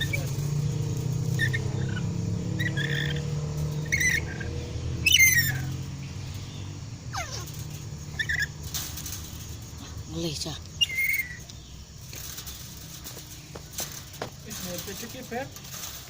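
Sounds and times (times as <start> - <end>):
low engine hum: 0.0 - 16.0
parrot calls and chirps: 1.3 - 5.8, 7.1 - 7.5, 8.1 - 8.6, 10.7 - 11.7.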